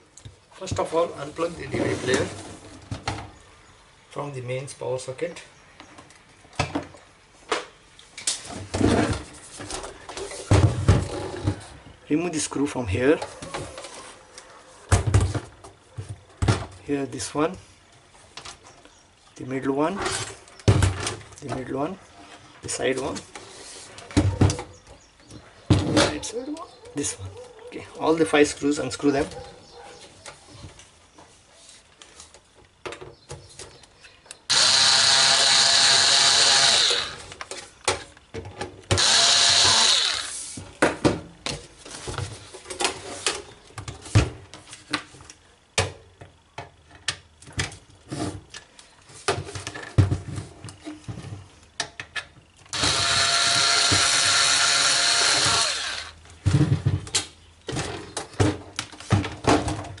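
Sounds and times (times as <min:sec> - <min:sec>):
electric screwdriver buzzing: 0:34.5 - 0:37.3, 0:39.0 - 0:40.4, 0:52.7 - 0:56.2.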